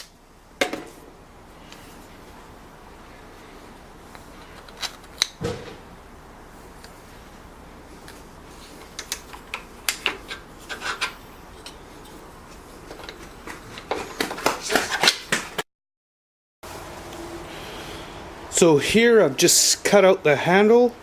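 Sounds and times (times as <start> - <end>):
scraping and rubbing on wood: 8.0 - 15.6.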